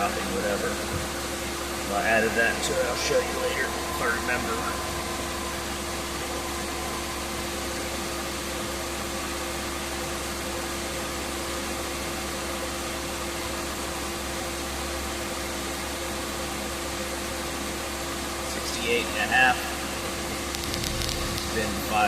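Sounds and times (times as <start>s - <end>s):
heater blower fan rushing air: 0.0s - 22.0s
steady hum: 0.0s - 22.0s.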